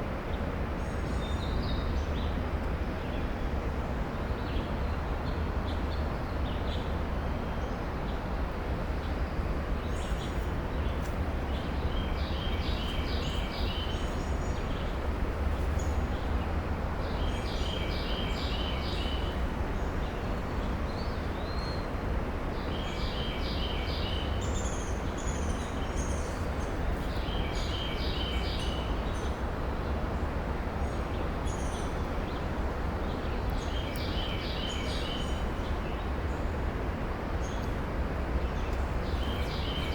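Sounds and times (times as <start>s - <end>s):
songbird singing: 9.8s - 15.0s, 22.6s - 29.4s, 33.1s - 36.4s, 38.4s - 39.9s.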